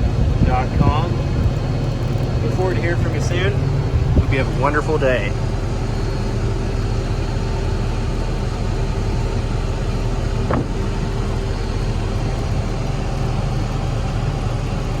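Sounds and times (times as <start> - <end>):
diesel engine idling: 0.0 - 15.0
short knock: 10.5 - 11.0.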